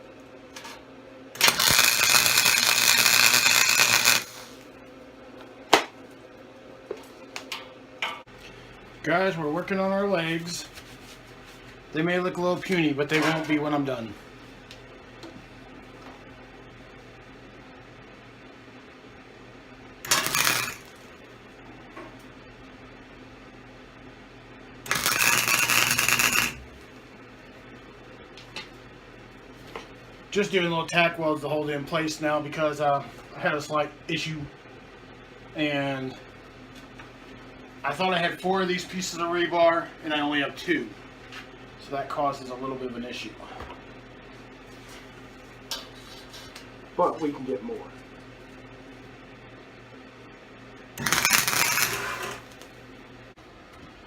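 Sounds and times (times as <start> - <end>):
steady low hum: 0.0 - 13.1
arc welder crackling hiss: 1.4 - 4.7, 20.0 - 21.1, 24.9 - 26.8, 51.0 - 52.7.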